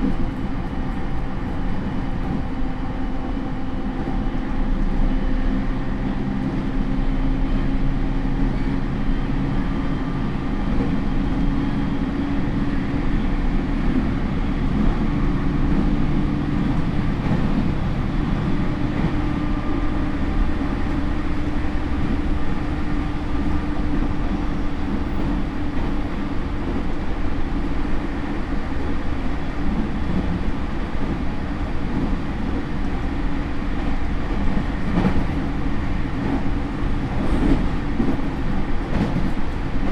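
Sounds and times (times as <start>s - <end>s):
train motor hum: 0.0s - 39.9s
train wheels rumbling on rail: 0.0s - 39.9s.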